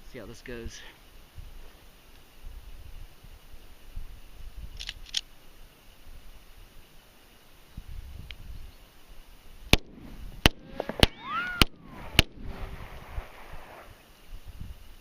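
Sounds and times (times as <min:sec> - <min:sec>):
pistol shots: 0:09.7 - 0:13.4
falling whine: 0:09.8 - 0:15.0.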